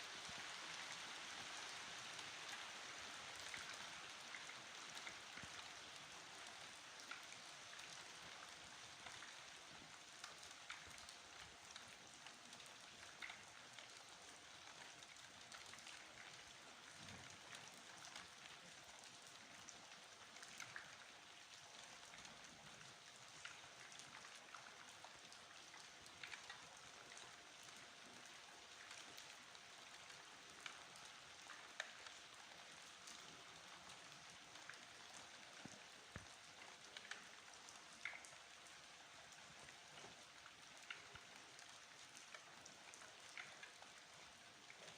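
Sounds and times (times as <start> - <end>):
soft rain falling: 0.0 - 44.9
raindrops ticking: 33.0 - 44.9.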